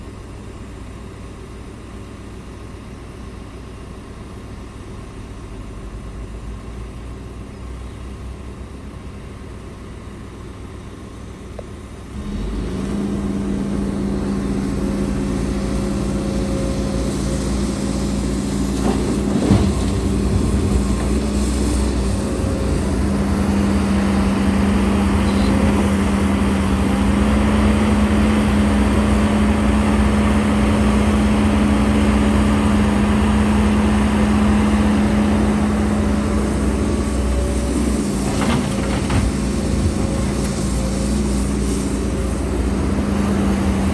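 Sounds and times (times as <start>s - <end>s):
heavy diesel engine running: 0.0s - 43.9s.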